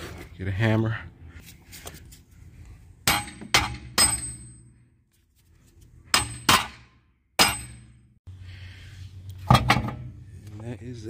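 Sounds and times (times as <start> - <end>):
hammer clanging on metal: 3.0 - 4.7, 6.1 - 8.0.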